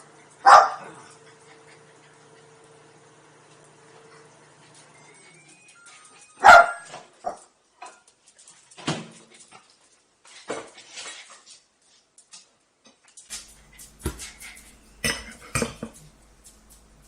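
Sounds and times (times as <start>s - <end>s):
small dog barking: 0.4s - 1.1s, 6.4s - 7.4s.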